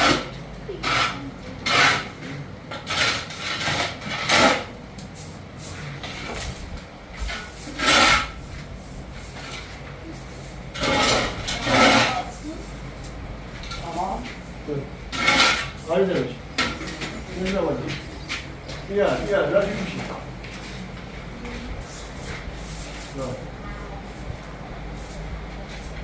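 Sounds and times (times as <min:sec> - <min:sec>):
rough scraping strokes: 0:00.0 - 0:04.7, 0:07.2 - 0:20.0.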